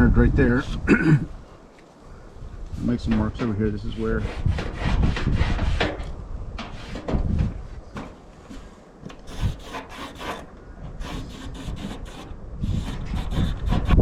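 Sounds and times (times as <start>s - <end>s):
metal flashing rubbing and scraping: 6.6s - 7.2s, 8.5s - 14.0s.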